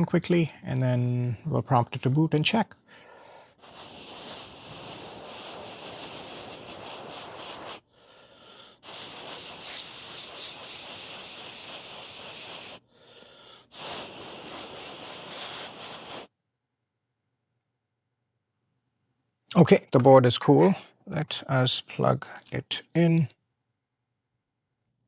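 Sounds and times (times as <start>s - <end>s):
compressed air hissing: 3.0s - 16.3s.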